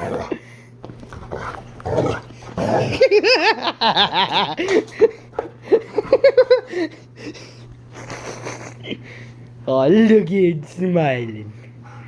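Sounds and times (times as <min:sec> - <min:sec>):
steady low hum: 0:00.0 - 0:12.0
toy giggling laugh: 0:08.0 - 0:08.9.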